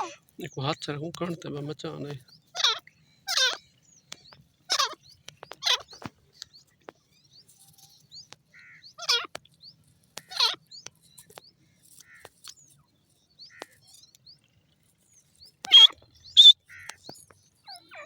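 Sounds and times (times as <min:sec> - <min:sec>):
faint small-bird chirps: 0:00.0 - 0:18.0
harsh bird calls sliding down: 0:15.6 - 0:17.0.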